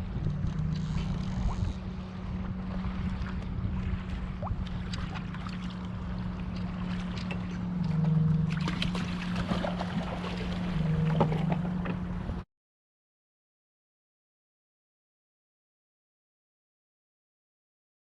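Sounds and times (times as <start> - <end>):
boat engine humming: 0.0 - 12.4
water splashing: 0.7 - 12.2.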